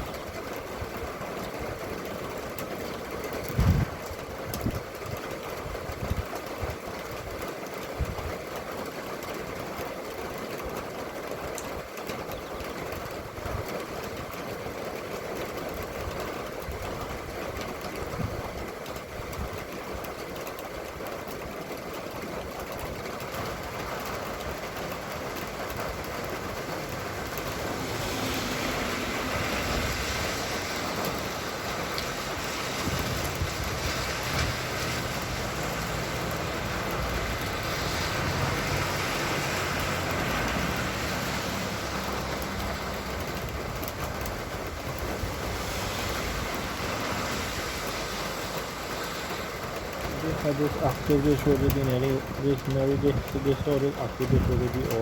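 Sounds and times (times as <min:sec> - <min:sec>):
rain hissing: 0:00.0 - 0:55.0
passing road traffic: 0:23.5 - 0:55.0
vehicle engine approaching: 0:25.2 - 0:44.0.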